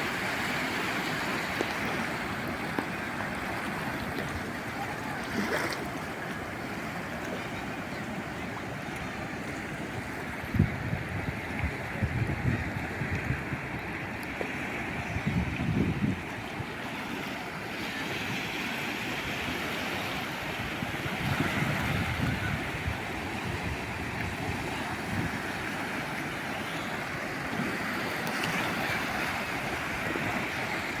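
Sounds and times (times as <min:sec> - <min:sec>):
sea waves washing in: 0:00.0 - 0:31.0
wind buffeting microphone: 0:09.7 - 0:16.8, 0:20.6 - 0:26.1.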